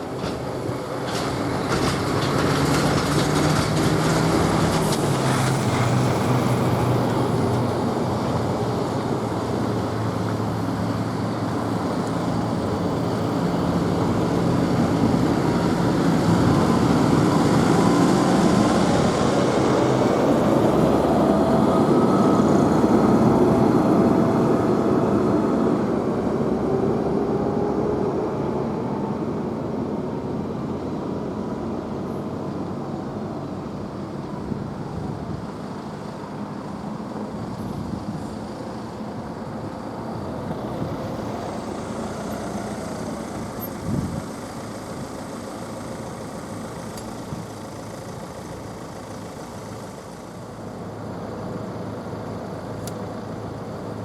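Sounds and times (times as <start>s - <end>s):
passing train: 0.0s - 54.0s.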